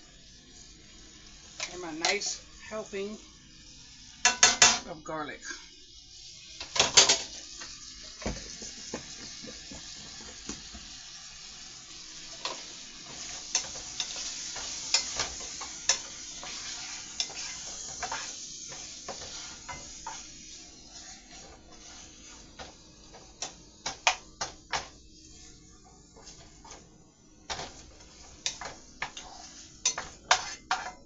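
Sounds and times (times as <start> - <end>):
chicken sizzling in a pot: 0.0 - 31.0
utensil scraping a pot: 12.4 - 24.2, 27.6 - 31.0.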